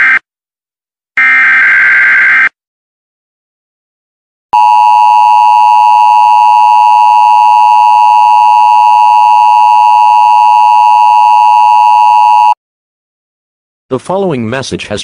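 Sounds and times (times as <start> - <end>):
two-tone alarm signal: 4.6 - 12.6.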